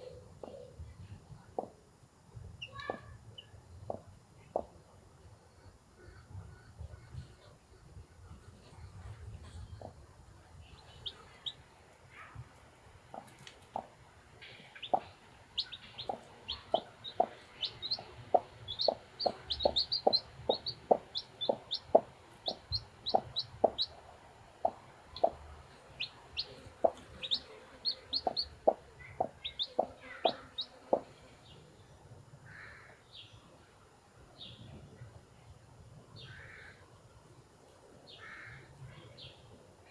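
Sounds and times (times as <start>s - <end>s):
chicks peeping: 13.0s - 31.2s
hen clucking: 13.1s - 31.2s.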